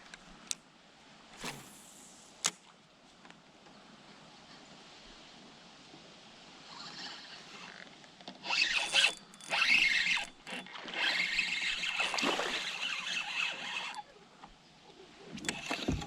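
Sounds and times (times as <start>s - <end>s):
fishing reel cranking: 8.4s - 14.1s, 15.4s - 16.0s.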